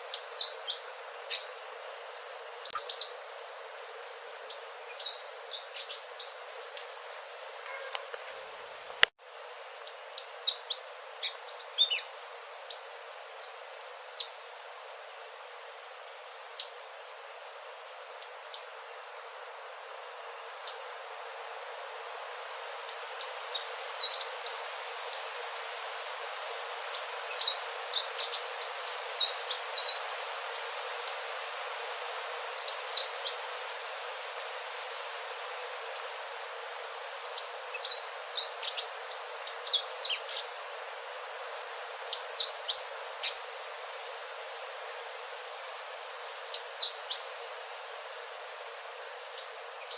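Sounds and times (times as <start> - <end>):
bird chirping song: 0.0 - 3.3, 4.0 - 6.7, 9.8 - 14.4, 37.0 - 41.0, 46.1 - 47.8
steady hiss: 0.0 - 49.9.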